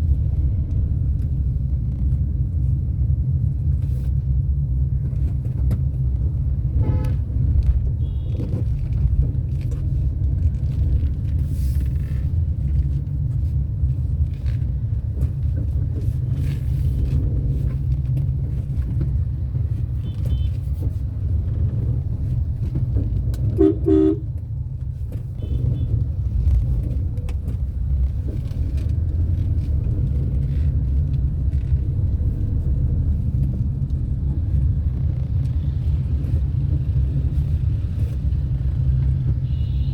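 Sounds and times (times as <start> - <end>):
car driving low rumble: 0.0 - 39.9
car horns honking: 23.6 - 24.3, 39.4 - 39.9.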